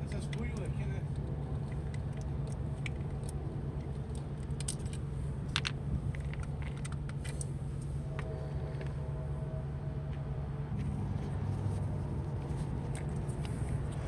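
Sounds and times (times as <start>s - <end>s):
low mechanical hum: 0.0s - 14.0s
clicks and rattles of small parts: 0.2s - 7.5s.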